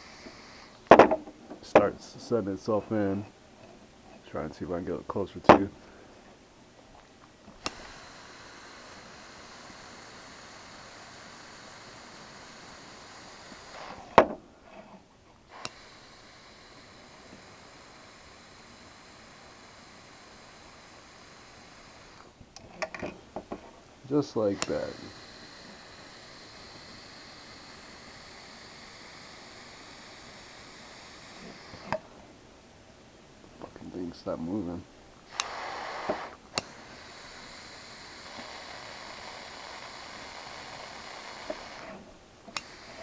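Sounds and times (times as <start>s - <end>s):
butane torch hissing: 0.0s - 3.2s, 7.5s - 14.4s, 15.4s - 23.1s, 24.0s - 32.2s, 34.1s - 43.0s
torch click: 7.5s - 8.3s, 15.6s - 15.9s, 24.3s - 27.3s, 31.2s - 32.0s, 35.3s - 38.9s, 40.9s - 43.0s.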